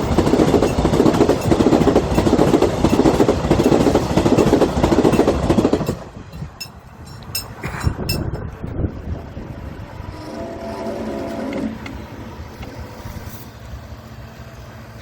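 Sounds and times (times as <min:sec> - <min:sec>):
crossing warning bell dinging: 0:00.0 - 0:08.7
train rumble and wheel clatter: 0:00.0 - 0:15.0.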